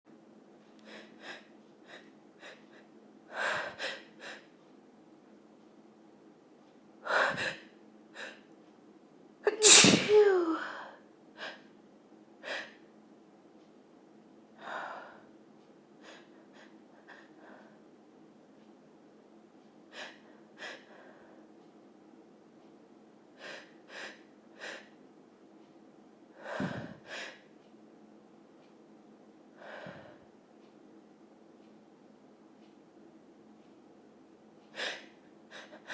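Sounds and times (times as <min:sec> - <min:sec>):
woman sneezing loudly: 0:09.5 - 0:10.7
sharp inhaling breaths: 0:26.4 - 0:27.4.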